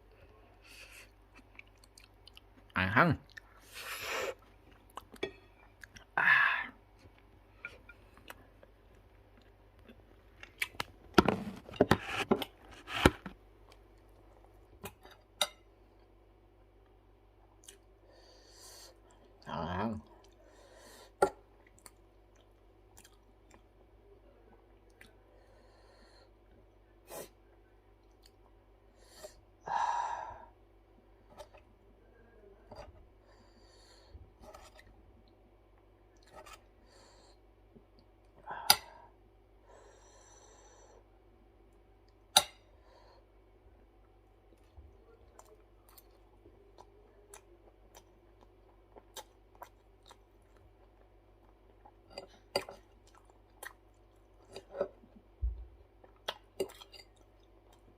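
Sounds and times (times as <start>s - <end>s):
person chewing: 0.9s - 2.7s, 3.3s - 6.2s, 7.0s - 10.9s, 17.6s - 17.9s, 21.6s - 23.8s, 44.5s - 55.3s, 55.9s - 57.9s.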